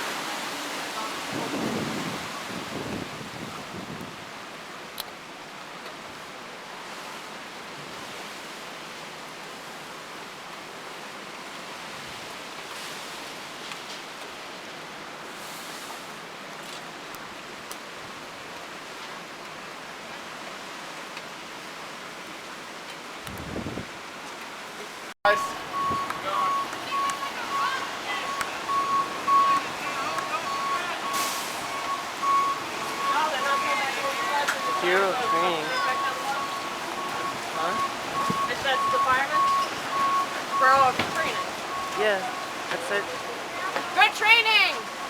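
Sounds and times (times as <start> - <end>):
storm surf: 0.0 - 4.3
hurricane wind: 0.0 - 45.0.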